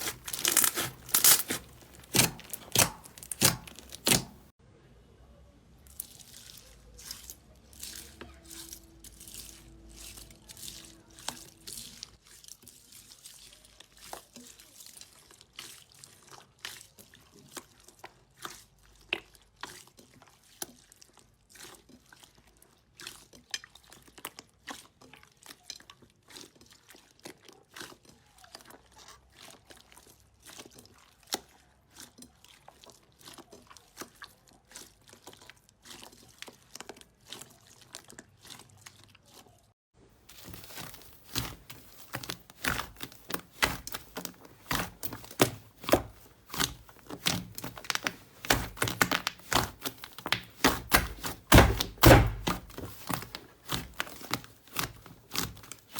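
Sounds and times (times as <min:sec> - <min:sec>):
slime clicking and popping: 0:00.0 - 0:04.5, 0:40.3 - 0:55.9.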